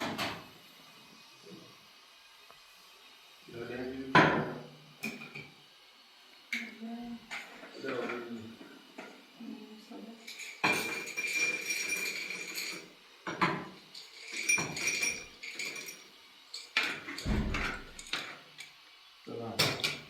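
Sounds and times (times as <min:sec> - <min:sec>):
hard objects clattering and clinking: 0:10.2 - 0:18.7.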